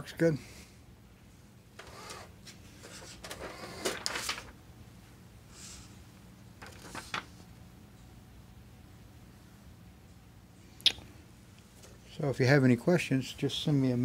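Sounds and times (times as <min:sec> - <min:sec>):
typewriter motor whir: 0:01.8 - 0:02.3, 0:02.9 - 0:04.4.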